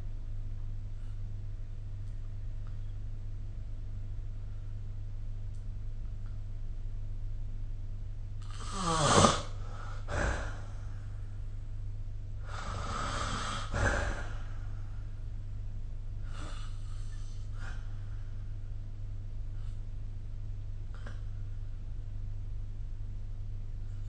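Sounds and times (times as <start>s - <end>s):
person snoring: 8.4s - 11.0s, 12.4s - 14.8s.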